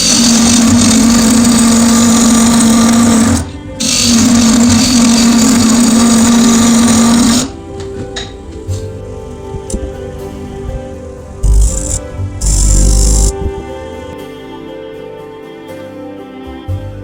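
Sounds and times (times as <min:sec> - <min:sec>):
electric power tool humming: 0:00.0 - 0:08.3, 0:11.4 - 0:13.5.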